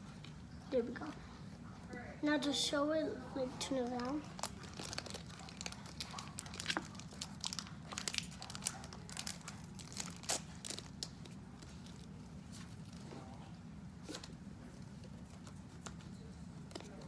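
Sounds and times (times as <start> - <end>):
card pack crinkling: 4.0 - 12.1.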